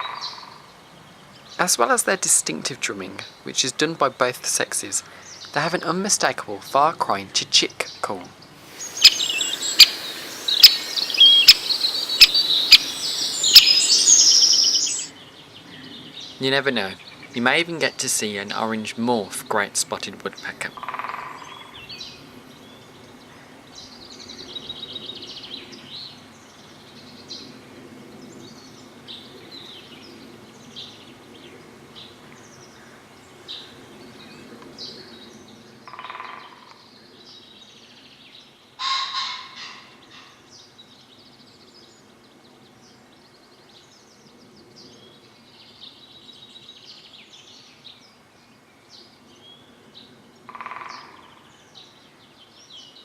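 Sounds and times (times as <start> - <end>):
small birds chirping and trilling: 8.4 - 17.2
faint steady low hum: 8.6 - 15.1
loud bird calls: 8.6 - 15.1.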